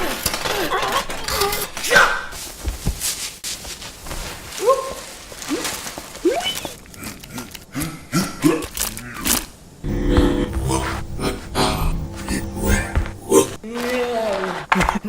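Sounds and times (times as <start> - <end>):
low steady hum: 9.8 - 13.6.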